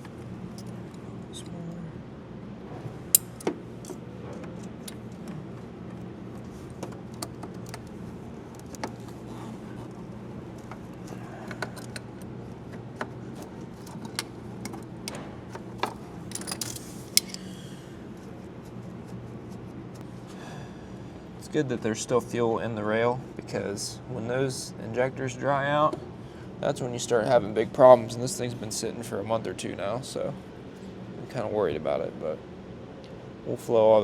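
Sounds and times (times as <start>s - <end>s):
steady low hum: 0.0s - 34.0s
metal tools clicking: 3.2s - 3.5s.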